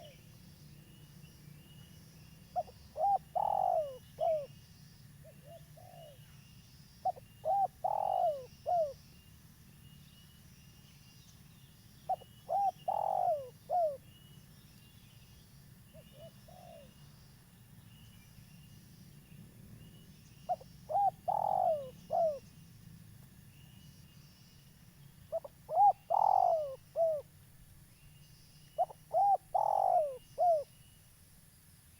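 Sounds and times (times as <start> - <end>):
small birds chirping: 0.0 - 31.2
dove cooing: 2.5 - 4.5, 5.2 - 6.2, 7.0 - 9.0, 12.1 - 14.1, 16.0 - 17.0, 20.5 - 22.5, 25.3 - 27.3, 28.8 - 30.7.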